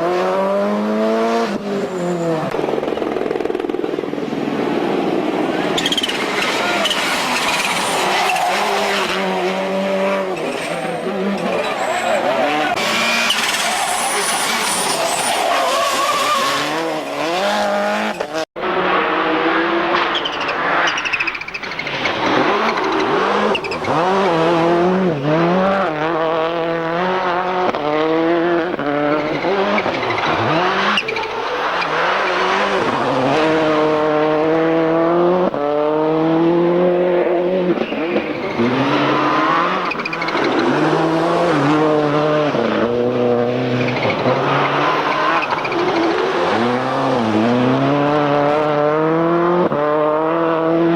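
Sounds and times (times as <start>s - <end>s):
rally car engine revving: 0.0s - 50.9s.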